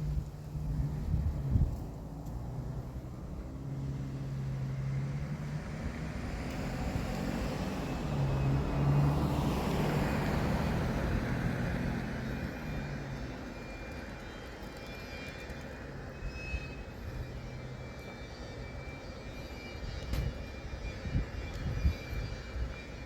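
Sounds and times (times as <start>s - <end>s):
engine passing by: 0.0s - 13.7s.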